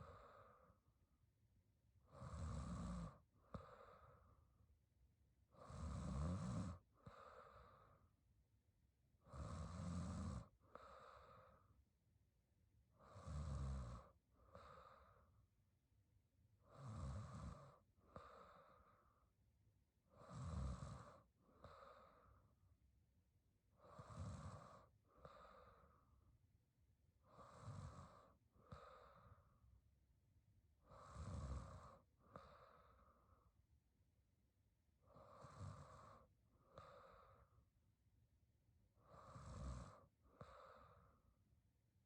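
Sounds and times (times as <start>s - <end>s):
person snoring softly: 0.0s - 1.0s, 2.0s - 4.6s, 5.5s - 8.2s, 9.2s - 11.9s, 12.8s - 15.6s, 16.6s - 19.4s, 20.0s - 22.6s, 23.6s - 26.4s, 27.2s - 29.9s, 30.8s - 33.8s, 35.0s - 37.8s, 38.9s - 41.5s.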